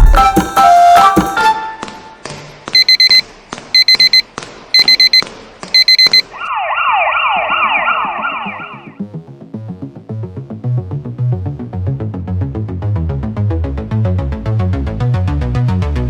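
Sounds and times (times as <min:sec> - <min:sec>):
short high electronic beeps: 0:02.8 - 0:03.2, 0:03.8 - 0:04.2, 0:04.8 - 0:05.2, 0:05.8 - 0:06.3
wailing synth sweep: 0:06.4 - 0:09.0.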